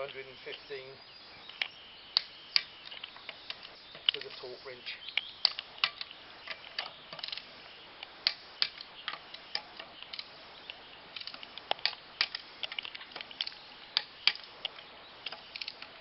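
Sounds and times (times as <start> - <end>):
torque wrench clicking: 11.1 - 15.9.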